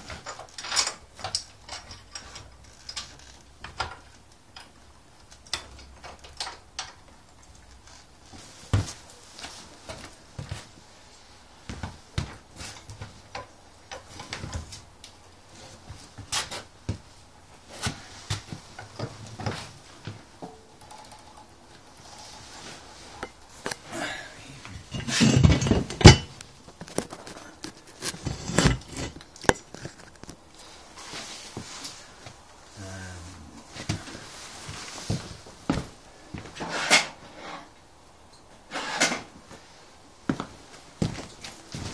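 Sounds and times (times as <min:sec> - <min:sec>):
objects clattering: 0:24.7 - 0:30.4.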